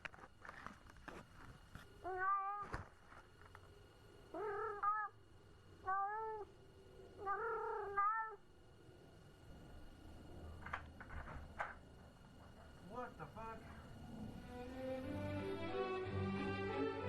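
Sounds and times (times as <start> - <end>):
cat meowing: 2.0 - 2.7, 4.4 - 5.2, 5.8 - 6.5, 7.2 - 8.4.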